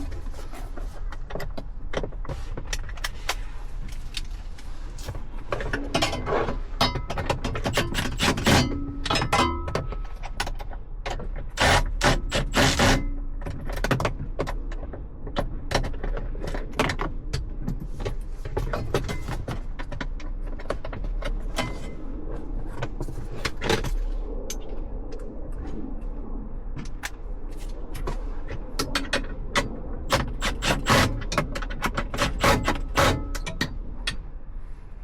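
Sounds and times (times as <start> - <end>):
hand tools and metal parts clinking: 5.9 - 10.6.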